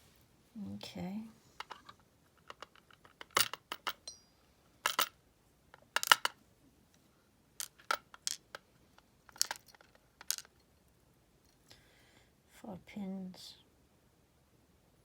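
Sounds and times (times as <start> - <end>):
metal pins clinking on a tray: 1.6 - 5.2, 6.0 - 6.4, 9.3 - 10.7.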